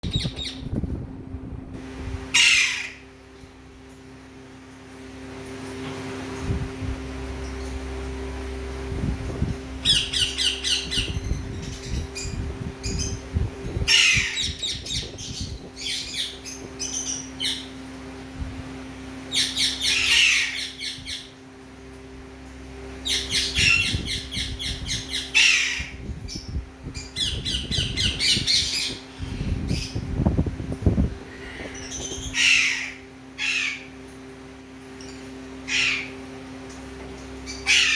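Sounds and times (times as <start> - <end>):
steady low hum: 0.0 - 37.9
parrots squawking: 2.3 - 3.1, 13.9 - 17.7, 19.3 - 21.3, 23.0 - 30.0, 31.3 - 34.0, 35.1 - 36.2, 37.5 - 37.9.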